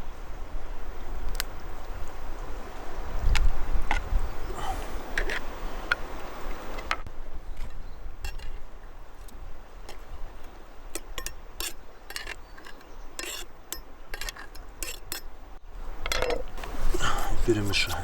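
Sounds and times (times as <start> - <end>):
utensils and dishes clinking: 11.2 - 15.2.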